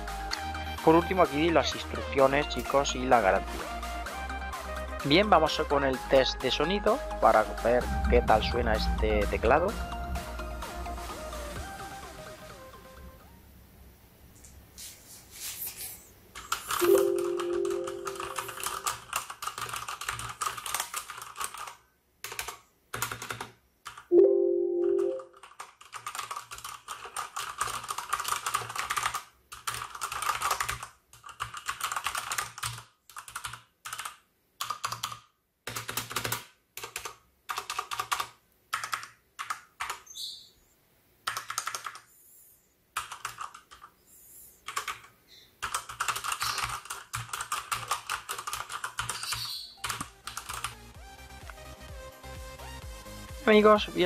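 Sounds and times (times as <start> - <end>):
clicky mechanical keyboard typing: 16.4 - 24.1, 25.0 - 40.0, 41.2 - 42.1, 43.0 - 43.9, 44.7 - 50.8.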